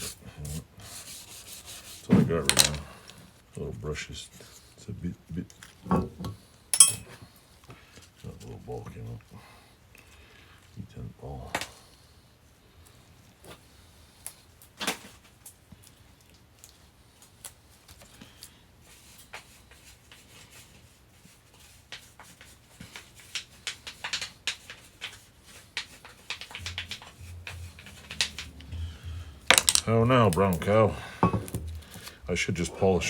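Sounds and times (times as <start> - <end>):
brush and tools clicking on steel: 19.1 - 30.8.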